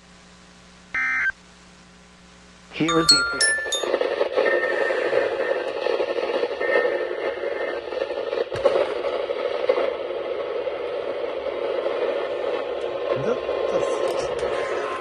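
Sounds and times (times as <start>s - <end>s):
radio static: 3.9s - 15.0s.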